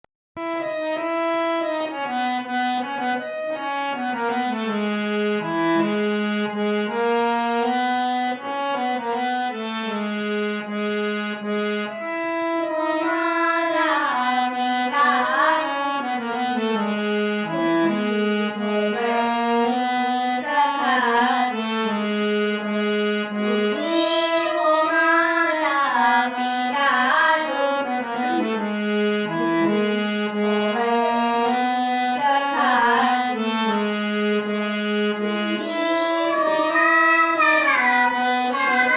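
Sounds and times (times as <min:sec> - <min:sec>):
harmonium melody: 0:00.4 - 0:38.9.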